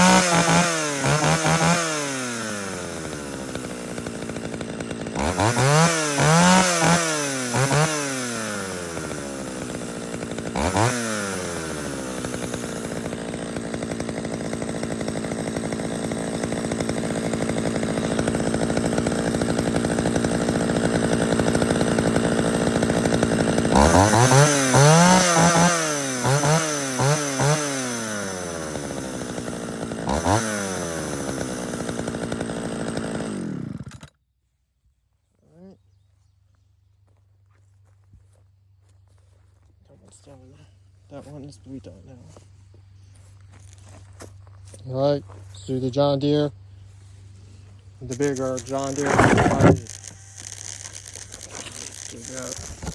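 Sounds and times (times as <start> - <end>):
chainsaw revving: 0.0 - 34.2, 48.0 - 52.9.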